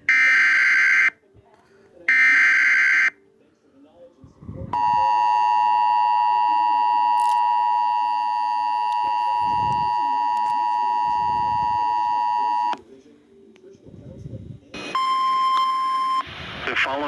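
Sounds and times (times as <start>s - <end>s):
steady two-tone alarm tone: 4.8s - 12.8s.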